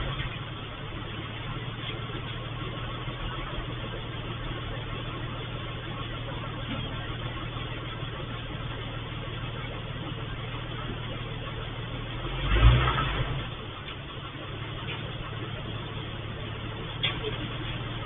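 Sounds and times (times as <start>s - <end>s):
vehicle engine humming: 0.0s - 18.0s
car driving past: 12.2s - 14.4s.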